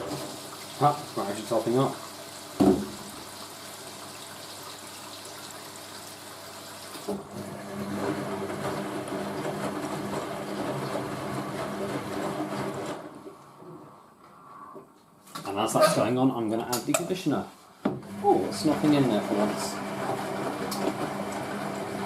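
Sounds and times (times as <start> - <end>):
washing machine water rushing: 0.0 - 13.3, 18.1 - 22.0.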